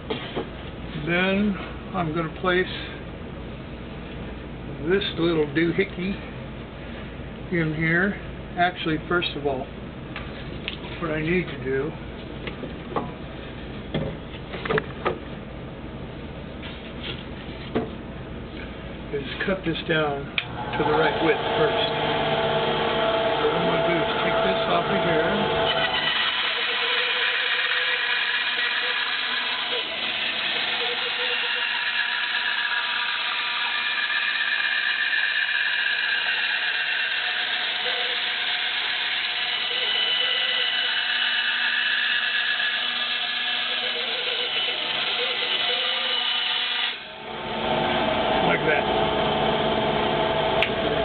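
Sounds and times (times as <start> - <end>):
workshop machine whirring: 19.4 - 51.0.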